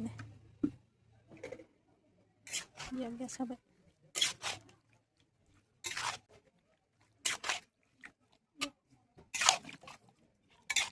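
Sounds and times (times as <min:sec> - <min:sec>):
spoon scraping a pan: 0:02.4 - 0:03.2, 0:04.1 - 0:04.8, 0:05.8 - 0:07.8, 0:08.6 - 0:10.9.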